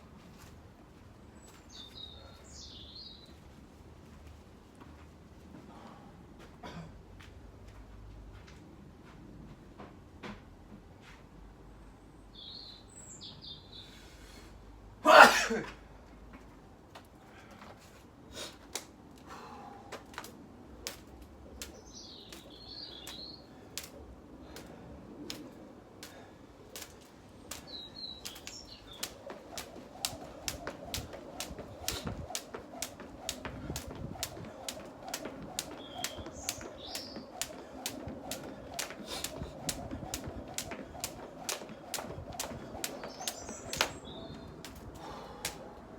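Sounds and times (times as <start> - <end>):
jump rope slapping the ground: 19.9 - 24.7, 25.3 - 45.6.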